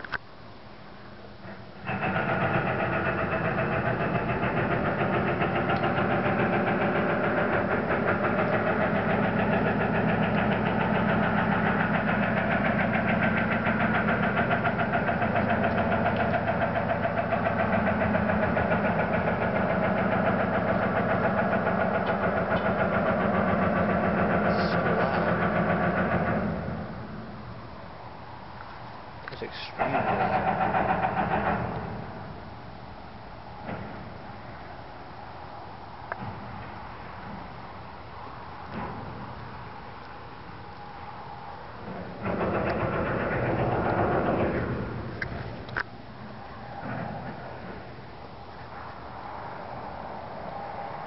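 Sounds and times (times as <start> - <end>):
loud fluttering drone: 1.4 - 29.2.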